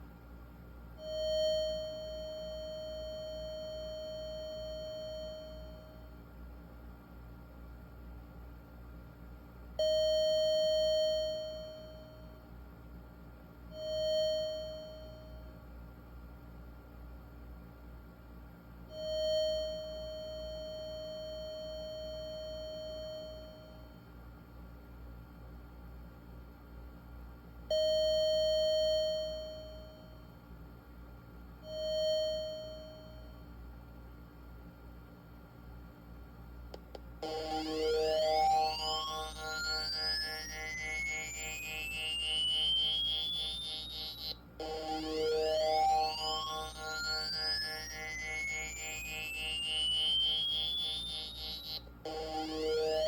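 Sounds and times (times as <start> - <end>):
synthesized test notes: 37.2 - 53.0.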